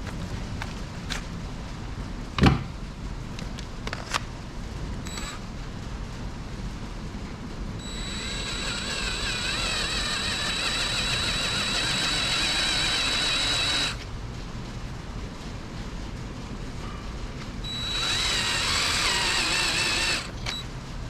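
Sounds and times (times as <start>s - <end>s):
electric drill boring into metal: 7.8s - 14.0s, 17.7s - 20.6s.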